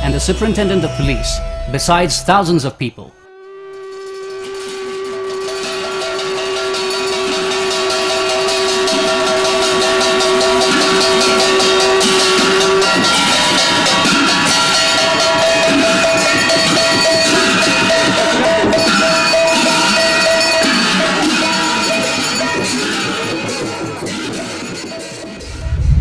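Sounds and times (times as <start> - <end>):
dense rapid percussion: 0.0 - 2.7, 25.4 - 26.0
long held musical note: 0.0 - 6.0.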